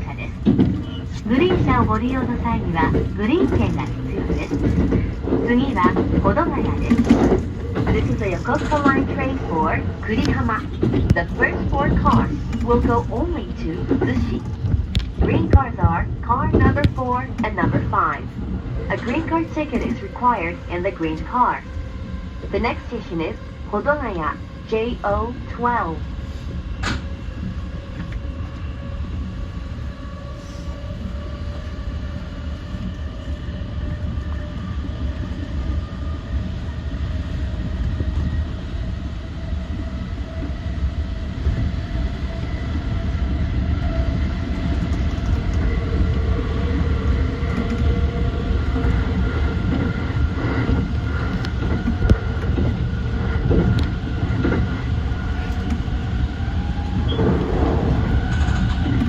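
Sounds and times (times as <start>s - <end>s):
track clacks: 0.0s - 21.8s, 43.7s - 59.0s
train wheels rumbling on rails: 0.0s - 59.0s.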